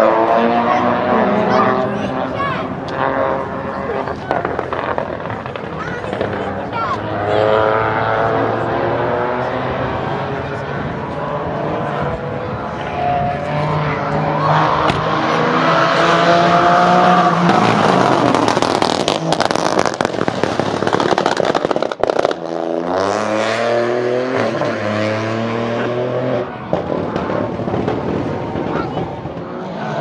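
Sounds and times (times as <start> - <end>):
car engine accelerating: 0.0 - 30.0
engine crackles and bangs: 2.6 - 8.2, 14.7 - 15.4, 16.7 - 23.0, 26.4 - 29.8.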